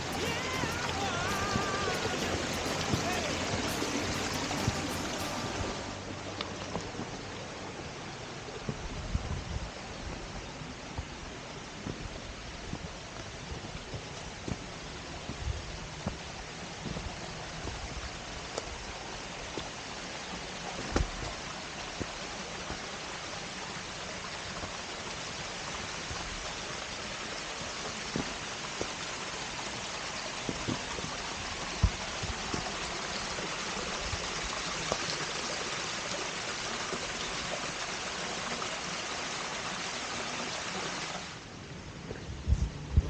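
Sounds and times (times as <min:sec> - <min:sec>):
stream water rushing: 0:00.0 - 0:08.7, 0:21.4 - 0:41.6.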